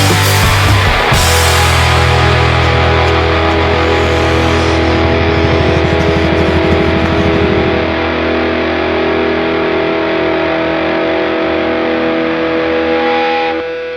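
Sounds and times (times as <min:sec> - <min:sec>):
driving low rhythm: 0:00.0 - 0:08.6
distorted electric guitar chords: 0:00.0 - 0:13.9.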